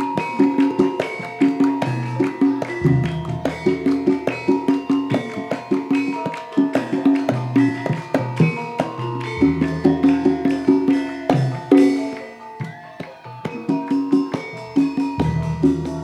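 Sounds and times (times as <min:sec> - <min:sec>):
drum strokes: 0:00.0 - 0:12.7
metallophones ringing: 0:00.0 - 0:16.0
deep low gong notes: 0:02.8 - 0:04.5.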